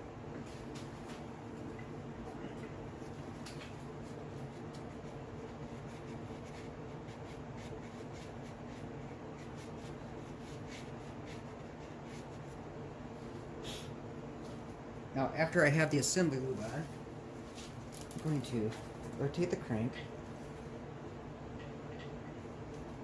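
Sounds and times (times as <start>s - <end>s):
steady background hum: 0.0s - 23.0s.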